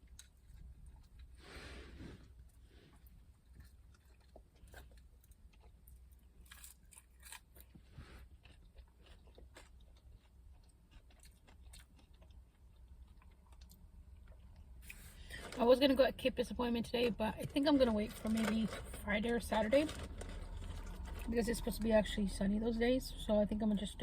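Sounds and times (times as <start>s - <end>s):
faint chewing of food: 0.0s - 15.6s, 19.9s - 21.3s.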